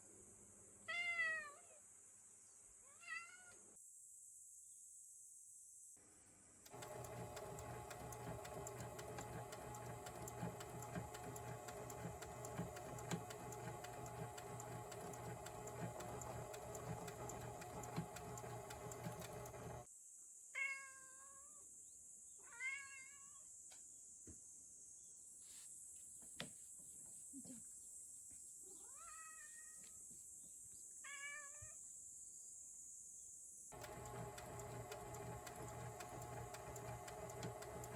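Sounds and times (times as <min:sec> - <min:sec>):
cat meowing: 0:02.9 - 0:03.6, 0:22.4 - 0:23.4
sewing machine running: 0:06.7 - 0:19.9, 0:33.7 - 0:37.9.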